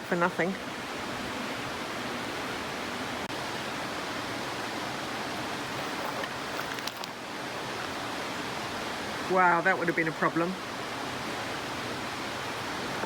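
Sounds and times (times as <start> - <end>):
running water rushing: 0.0 - 13.0.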